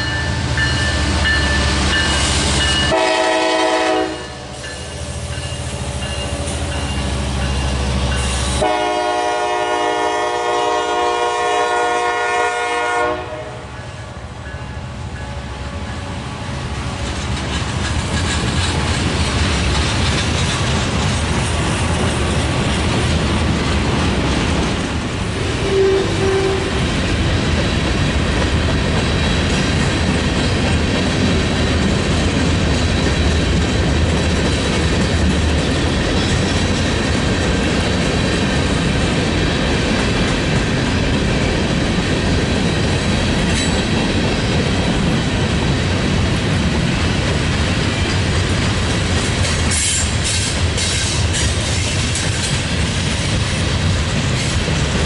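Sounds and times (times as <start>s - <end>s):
freight train wheels rumbling: 0.0s - 55.0s
wheels clacking over rail joints: 16.9s - 25.2s, 26.8s - 55.0s.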